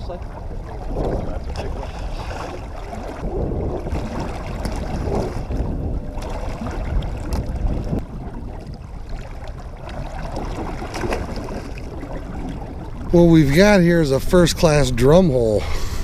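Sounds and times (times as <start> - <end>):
wind buffeting microphone: 0.0 - 15.3
boat engine low rumble: 0.0 - 16.0
water washing along hull: 0.0 - 16.0.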